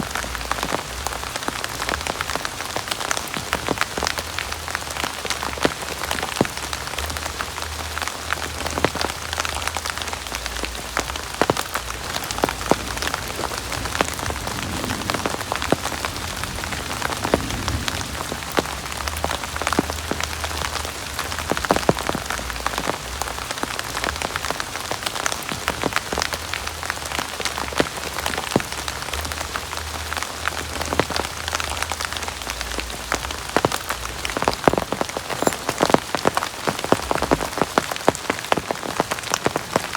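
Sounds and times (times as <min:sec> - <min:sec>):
heavy rain falling: 0:00.0 - 0:39.9
low rumble: 0:10.5 - 0:23.4.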